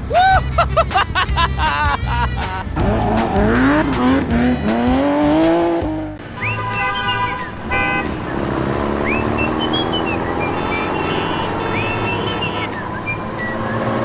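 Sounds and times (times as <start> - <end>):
background music: 0.0 - 12.6
cartoon car sound effect: 0.0 - 12.9
high squeal-like tone: 6.3 - 14.0.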